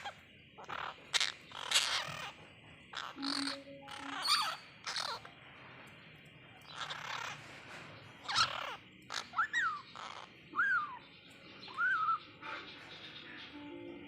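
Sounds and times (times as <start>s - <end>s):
parakeets squawking: 0.0s - 5.4s, 6.5s - 13.6s.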